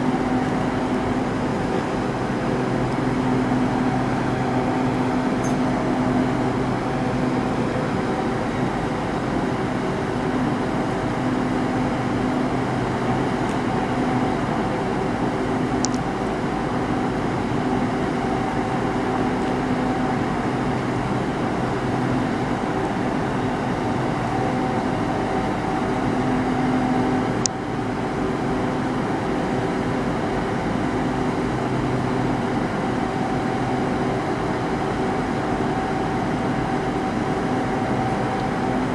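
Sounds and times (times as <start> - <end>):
diesel train engine idling: 0.0 - 38.9.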